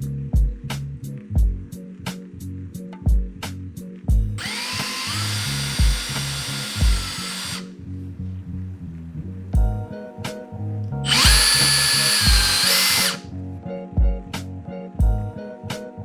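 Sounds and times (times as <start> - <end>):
background music with beat: 0.0 - 5.0, 9.6 - 16.0
power drill spinning: 4.4 - 7.7, 11.1 - 13.2.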